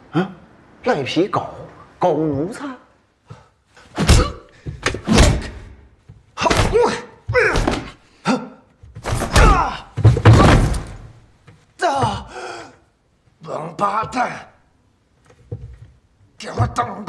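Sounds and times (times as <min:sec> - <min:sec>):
heavy thuds of blows: 0:03.9 - 0:08.0, 0:09.0 - 0:11.3
men grunting and yelling: 0:09.2 - 0:10.0, 0:11.8 - 0:12.8.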